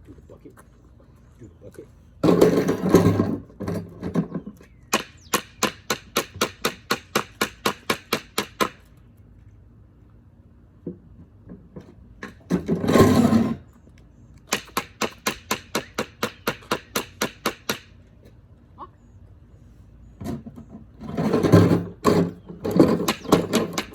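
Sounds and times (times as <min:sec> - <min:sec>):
loud rough clatter: 0:02.2 - 0:05.0, 0:12.2 - 0:13.6, 0:20.2 - 0:23.9
scattered knocks: 0:21.4 - 0:23.9.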